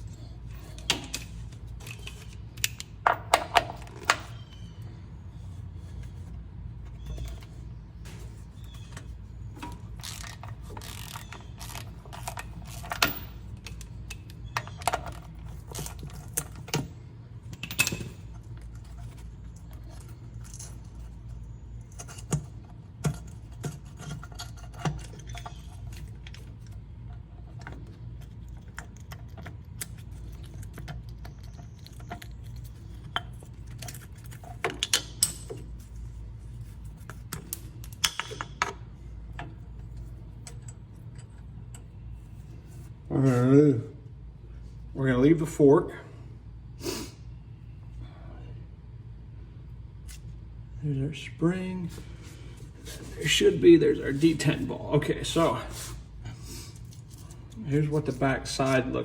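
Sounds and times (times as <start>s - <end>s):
steady low hum: 0.0s - 59.0s
small metal parts clinking: 9.6s - 16.9s, 17.5s - 27.6s.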